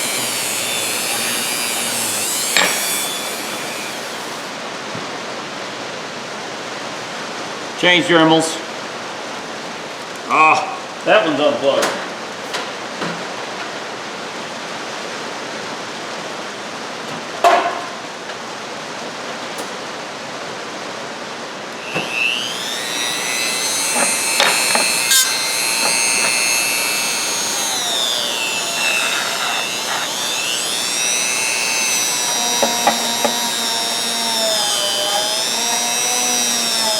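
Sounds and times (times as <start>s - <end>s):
rotary tool whining: 0.0s - 4.6s, 21.8s - 36.9s.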